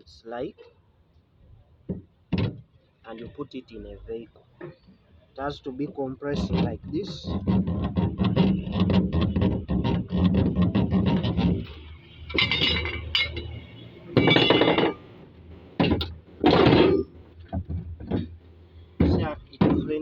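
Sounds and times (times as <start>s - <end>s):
metal shock absorbers clanking: 5.6s - 15.2s, 15.8s - 20.0s.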